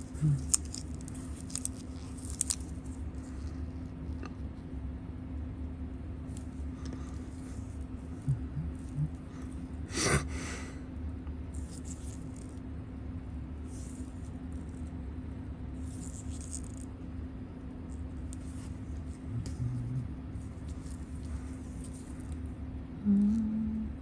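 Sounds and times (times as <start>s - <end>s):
steady low hum: 0.0s - 24.0s
scratchy handling noises: 0.1s - 3.6s, 17.9s - 22.5s.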